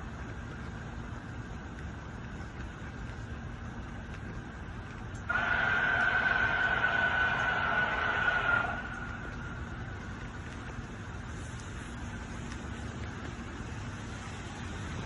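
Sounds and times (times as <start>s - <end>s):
steady background rumble: 0.0s - 15.0s
loud droning tone: 5.3s - 10.3s.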